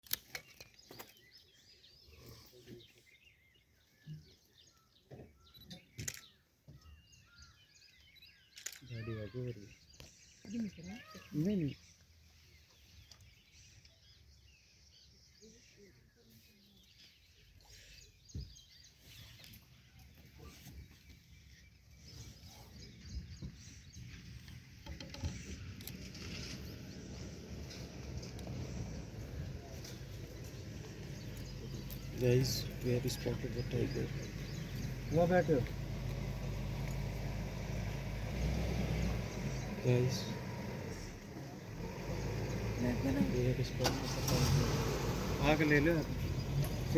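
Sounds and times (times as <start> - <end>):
small birds chirping: 0.0 - 46.9
low uneven rumble: 22.0 - 46.9.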